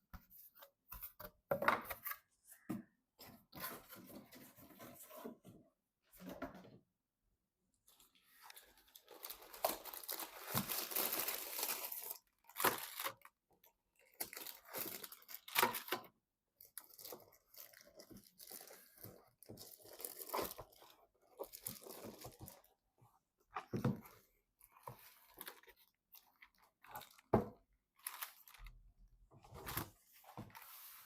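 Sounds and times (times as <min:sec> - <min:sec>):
packaging crinkling and tearing: 0:08.5 - 0:13.2.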